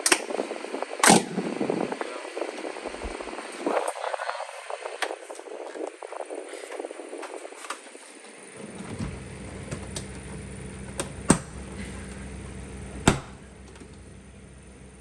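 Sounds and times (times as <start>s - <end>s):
plastic clips popping loose: 0.0s - 0.4s
sharp knocks on door panel: 13.1s - 13.4s.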